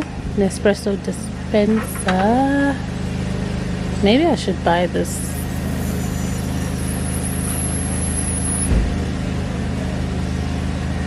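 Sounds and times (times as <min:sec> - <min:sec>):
machinery humming: 0:00.0 - 0:11.0
faint high whine: 0:05.0 - 0:09.9.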